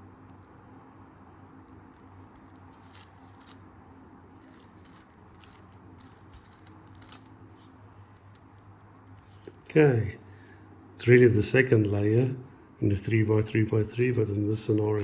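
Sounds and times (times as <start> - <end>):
puzzle cube plastic clicks: 1.9 - 3.6, 4.4 - 7.3.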